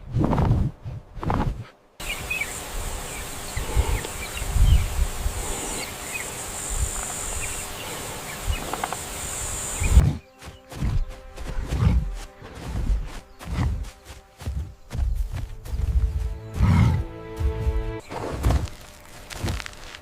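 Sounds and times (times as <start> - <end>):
insects shrilling: 2.0 - 10.0
faint chirps: 2.0 - 11.0.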